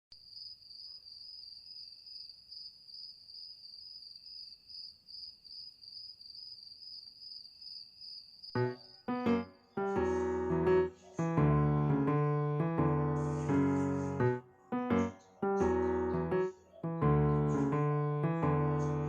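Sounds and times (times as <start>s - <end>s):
crickets chirping: 0.2s - 11.4s
piano notes: 8.6s - 19.0s.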